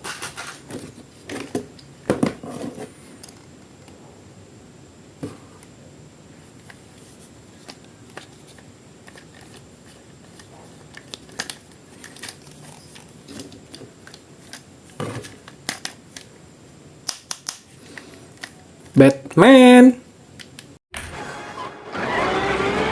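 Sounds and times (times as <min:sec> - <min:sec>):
plastic packaging clicks and crinkles: 0:07.6 - 0:16.3.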